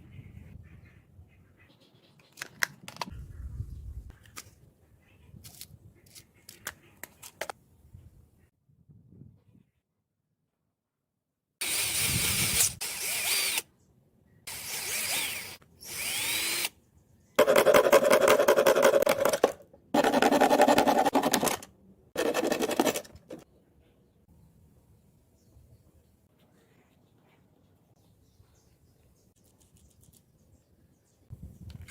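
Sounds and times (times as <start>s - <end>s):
small electric motor running: 11.6s - 13.6s, 14.5s - 16.7s.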